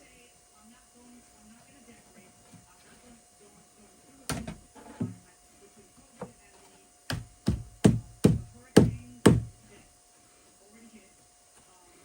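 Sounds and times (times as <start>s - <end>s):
knocks on wood: 4.3s - 5.2s, 7.1s - 9.6s.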